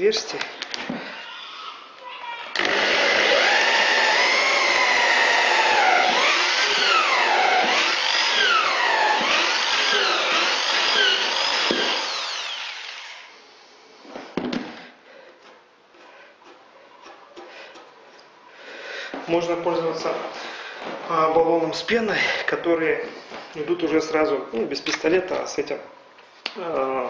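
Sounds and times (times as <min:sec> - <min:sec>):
electric drill boring wood: 0:02.6 - 0:13.4.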